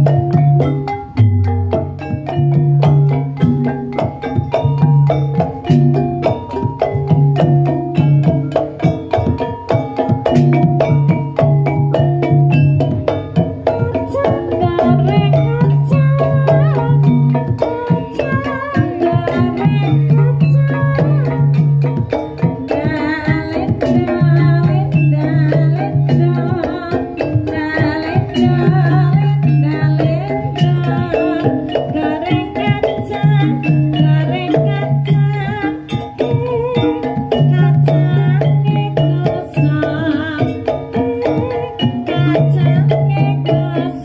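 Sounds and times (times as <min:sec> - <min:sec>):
hand drums beating: 0:00.0 - 0:44.0
tuned metal percussion: 0:00.0 - 0:44.0
woman singing: 0:10.4 - 0:44.0.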